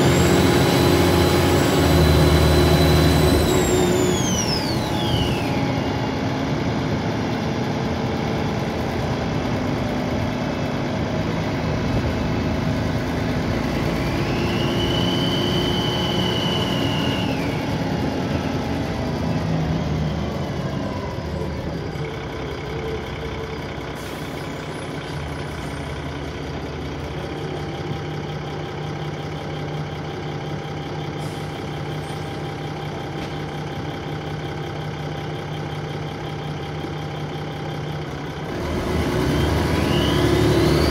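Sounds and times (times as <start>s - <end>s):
turbocharger whine: 0.0s - 26.4s, 38.2s - 40.9s
bus engine under load: 0.0s - 40.9s.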